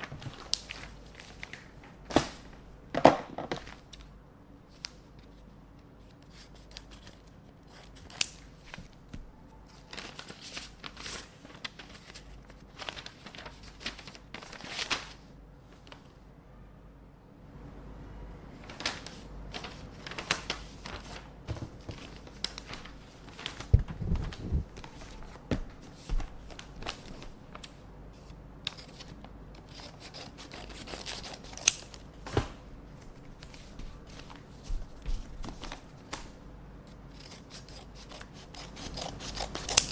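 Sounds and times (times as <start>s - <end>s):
scissors snipping paper: 6.3s - 8.5s, 28.7s - 32.0s, 37.1s - 39.9s
paper rustling and tearing: 9.7s - 15.2s, 18.6s - 32.5s, 37.1s - 39.9s.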